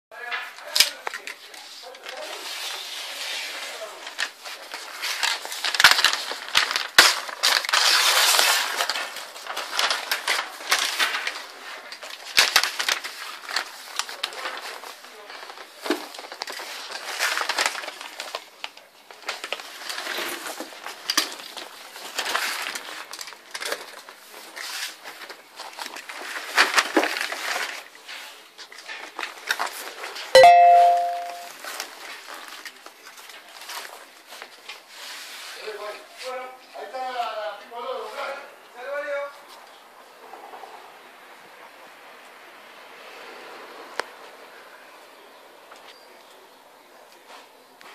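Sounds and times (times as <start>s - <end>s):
packaging crinkling and rustling: 0.6s - 35.2s.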